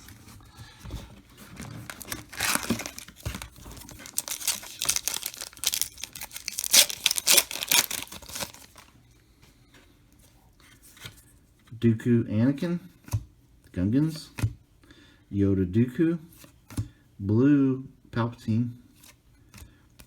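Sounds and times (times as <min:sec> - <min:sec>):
foil wrapper crinkling and tearing: 0:01.5 - 0:08.9.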